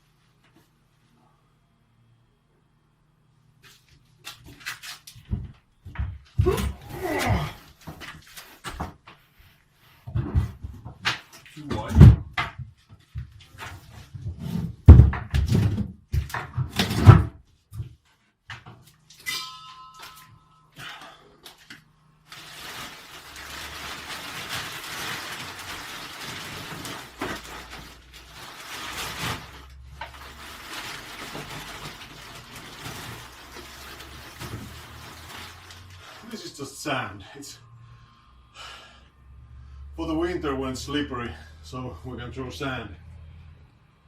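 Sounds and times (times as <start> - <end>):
junk knocking and thumping: 10.1 - 18.0.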